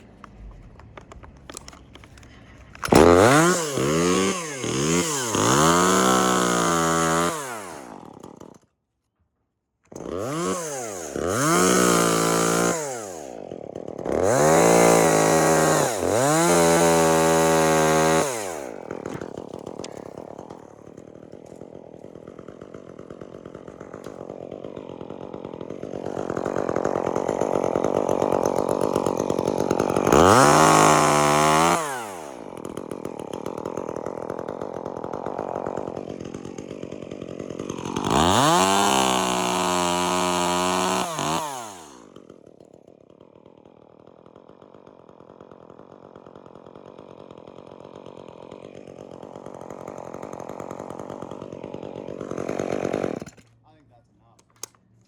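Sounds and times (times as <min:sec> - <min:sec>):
chainsaw revving and cutting wood: 0:00.0 - 0:08.8, 0:09.8 - 0:54.8.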